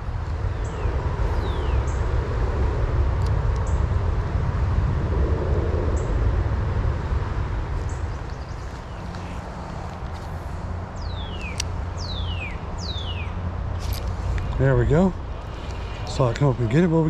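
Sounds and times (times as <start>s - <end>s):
high bird chirps: 11.0s - 13.4s.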